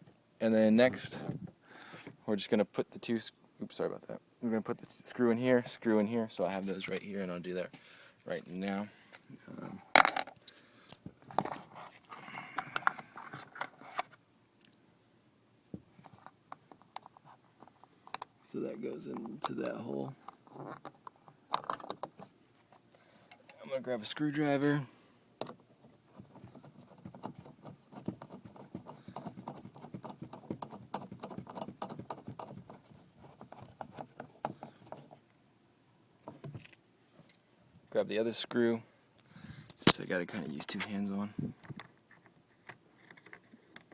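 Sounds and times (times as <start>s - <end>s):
light clicks and scraping: 6.5s - 7.8s, 40.6s - 43.9s.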